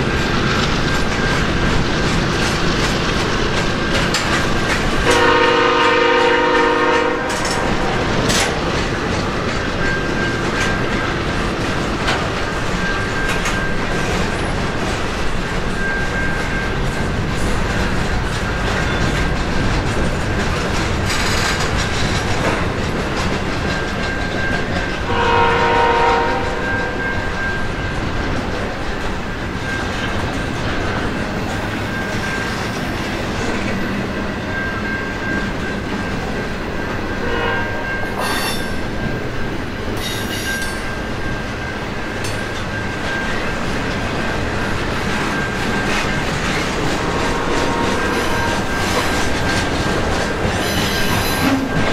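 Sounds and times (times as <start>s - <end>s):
wheels clicking over rail joints: 0.0s - 6.5s, 7.2s - 37.2s, 38.0s - 51.9s
freight train rolling: 0.0s - 51.9s
train horn: 5.0s - 8.0s, 25.0s - 27.0s, 37.2s - 38.6s, 47.1s - 48.7s
high wheel squeal: 29.6s - 39.3s, 39.9s - 51.9s.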